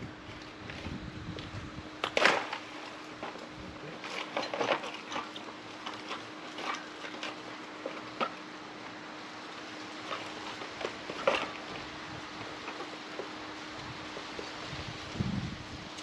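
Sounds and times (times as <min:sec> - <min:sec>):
tools and parts clattering: 0:02.0 - 0:08.4, 0:10.0 - 0:11.8.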